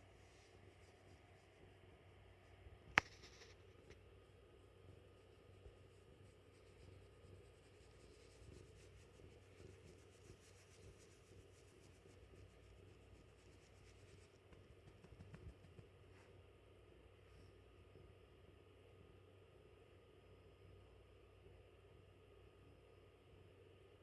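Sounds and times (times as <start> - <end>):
faint rapid scratching: 0.0 - 16.5.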